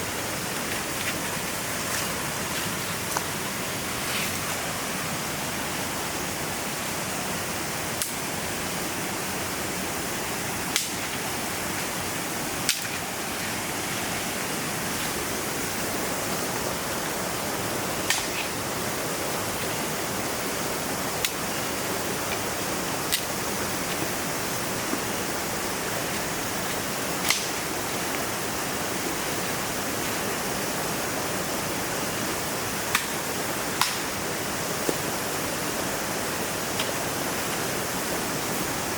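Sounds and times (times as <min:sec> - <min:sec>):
river rushing: 0:00.0 - 0:38.9
sharp single clicks: 0:10.7 - 0:11.0, 0:32.9 - 0:33.2, 0:33.8 - 0:34.1.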